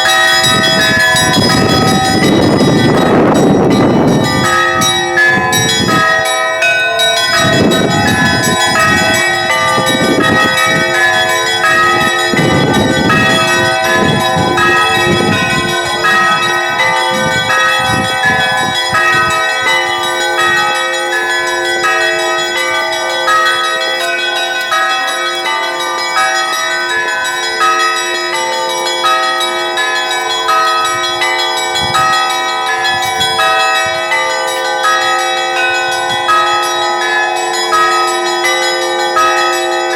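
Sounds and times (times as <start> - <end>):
large bell deep strokes: 0.0 - 26.3
small church bells ringing: 0.0 - 39.9.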